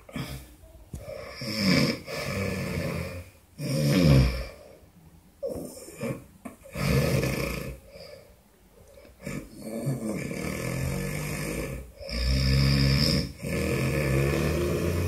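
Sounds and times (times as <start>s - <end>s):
trembling snoring: 1.2s - 4.6s, 5.4s - 8.0s, 9.2s - 15.0s.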